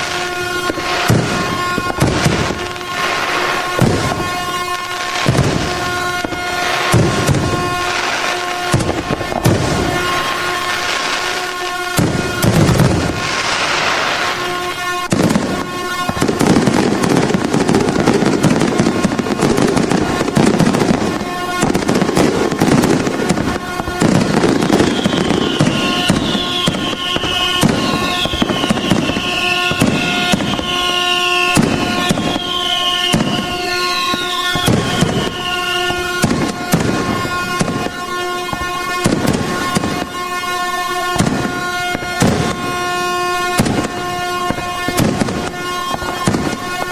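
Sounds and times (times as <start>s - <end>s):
fireworks banging and crackling: 0.0s - 46.9s
steady air horn tone: 0.0s - 46.9s
short falling whistles: 24.6s - 35.8s.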